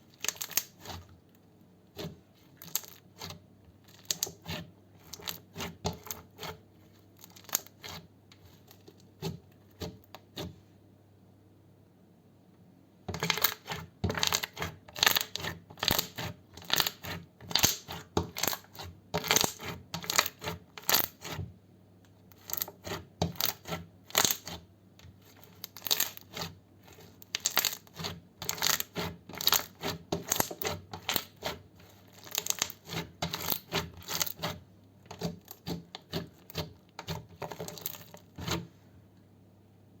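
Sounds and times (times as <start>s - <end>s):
slime crackling and popping: 0.2s - 0.8s, 15.0s - 17.8s, 23.3s - 24.5s, 25.6s - 26.3s, 27.3s - 31.3s, 32.1s - 34.4s.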